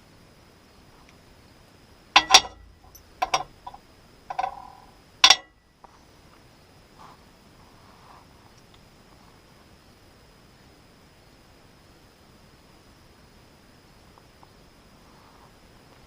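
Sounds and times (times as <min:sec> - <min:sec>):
metal tools clanking: 0:02.2 - 0:05.5.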